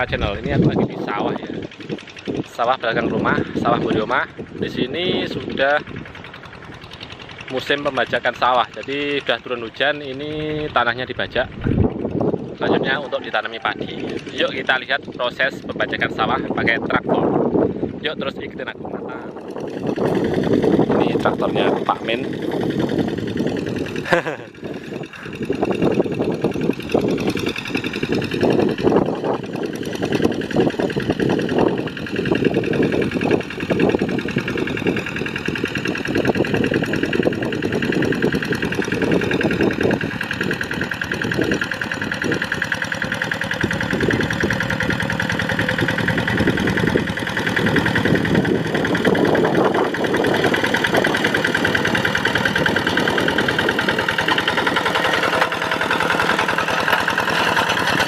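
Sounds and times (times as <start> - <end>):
diesel hand tractor knocking: 0.0 - 12.9, 19.3 - 58.0.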